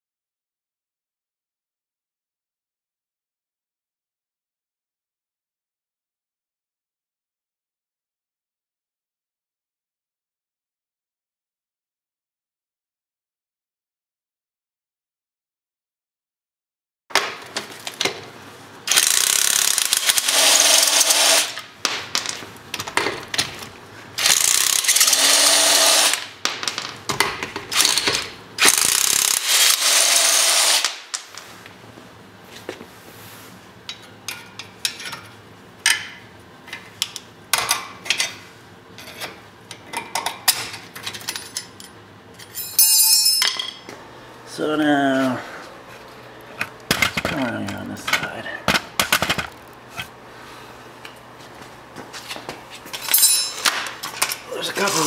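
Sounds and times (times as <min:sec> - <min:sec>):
power tool whining: 0:18.9 - 0:21.6, 0:24.2 - 0:26.3, 0:28.6 - 0:31.0.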